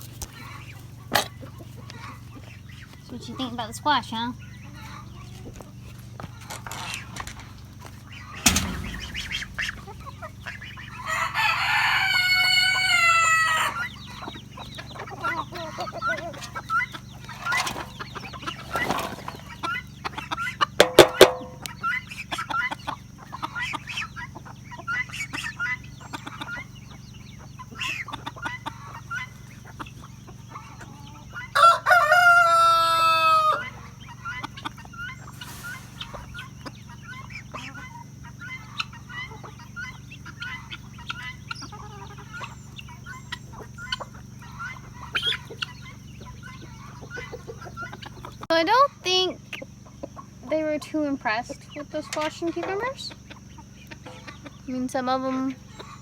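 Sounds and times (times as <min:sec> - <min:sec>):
chickens clucking: 0:00.0 - 0:56.0
rooster crowing: 0:10.8 - 0:14.0, 0:31.3 - 0:34.0.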